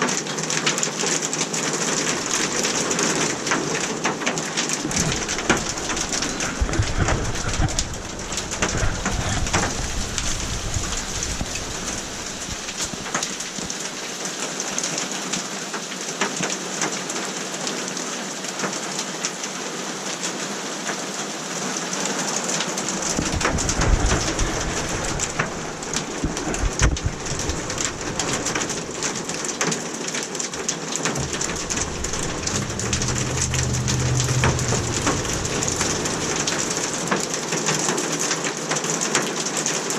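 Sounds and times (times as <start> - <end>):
hail pelting a greenhouse: 0.0 - 19.5, 21.6 - 39.9
low rumbles: 2.1 - 13.8, 22.8 - 29.7, 30.5 - 38.2.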